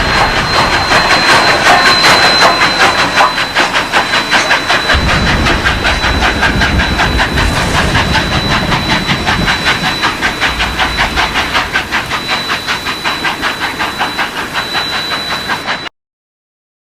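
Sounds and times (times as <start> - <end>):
steam hiss: 0.0 - 15.8
steam locomotive chuffing: 0.0 - 15.9
thin steady high tone: 0.5 - 15.7
deep rumble: 4.9 - 14.0.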